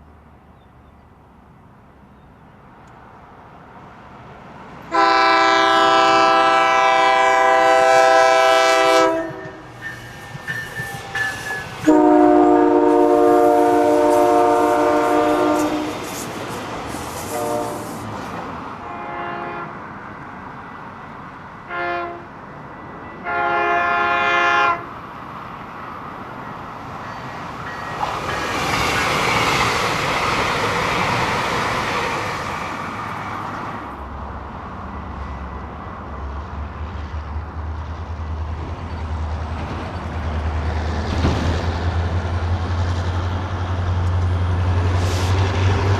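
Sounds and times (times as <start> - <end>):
train passing with rushing noise: 0.0 - 45.9
train horn blasts: 4.9 - 16.2, 17.2 - 18.0, 18.8 - 19.8, 21.6 - 22.4, 23.1 - 24.9.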